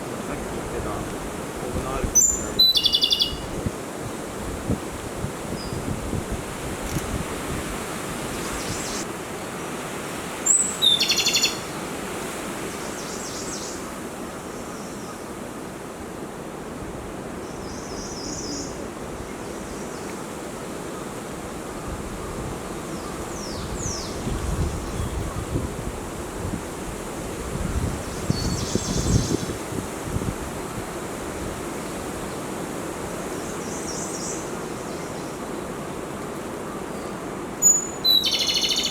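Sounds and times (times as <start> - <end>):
wind noise: 0.0 - 9.0, 21.7 - 33.2
bird singing with rattling trill: 2.2 - 3.5, 37.0 - 38.9.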